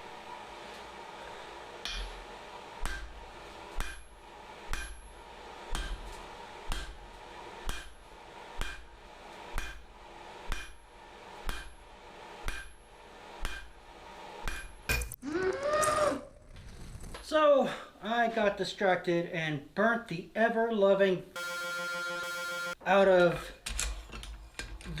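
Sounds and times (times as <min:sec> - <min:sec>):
hammer striking steel on anvil: 0:01.8 - 0:02.2, 0:02.8 - 0:03.2, 0:03.8 - 0:04.1, 0:04.7 - 0:05.1, 0:05.7 - 0:06.1, 0:06.7 - 0:07.0, 0:07.6 - 0:08.0, 0:08.6 - 0:08.9, 0:09.5 - 0:09.9, 0:10.5 - 0:10.8, 0:11.4 - 0:11.8, 0:12.4 - 0:12.8, 0:13.4 - 0:13.8, 0:14.5 - 0:15.2.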